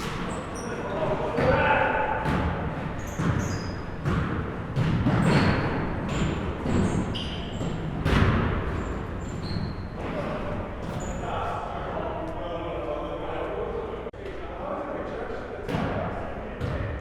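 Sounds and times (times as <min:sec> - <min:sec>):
sneaker squeaks: 0:00.0 - 0:11.6
basketballs bouncing on gym floor: 0:01.4 - 0:11.2.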